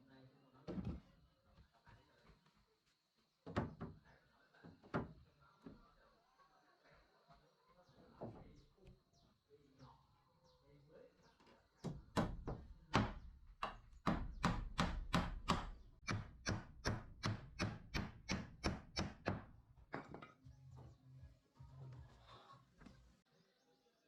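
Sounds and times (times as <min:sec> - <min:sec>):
hand tool striking wood: 0:11.9 - 0:20.3.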